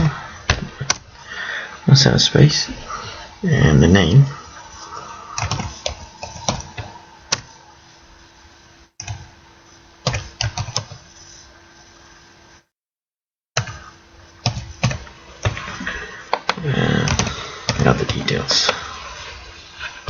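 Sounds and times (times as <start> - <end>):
faint steady hum: 0.0 - 12.7, 13.6 - 20.0
computer keyboard typing: 10.0 - 11.0.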